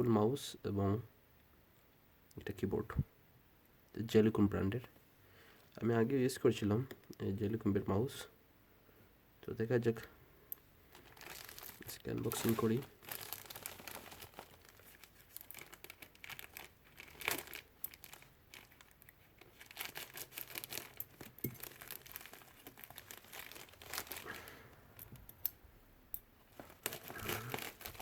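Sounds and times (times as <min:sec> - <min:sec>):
small crackles and rustles: 0:10.8 - 0:25.6, 0:26.4 - 0:28.0
packaging crinkling and tearing: 0:10.9 - 0:25.3, 0:26.5 - 0:28.0.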